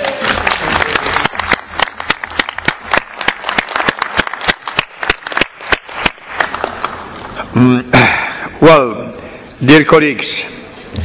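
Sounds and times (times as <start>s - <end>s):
audience applause: 0.0s - 7.1s.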